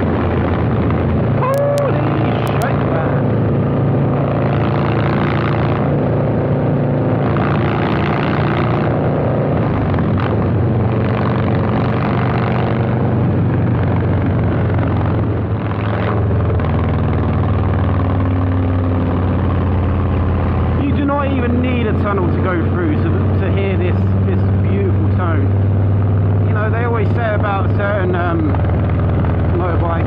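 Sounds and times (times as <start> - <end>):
motorcycle engine running loud: 0.0 - 30.0
rushing wind noise: 0.0 - 30.0.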